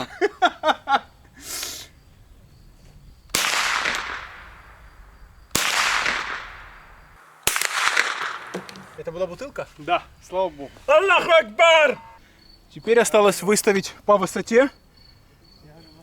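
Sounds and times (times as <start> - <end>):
gunshots with long echo: 3.3 - 9.1.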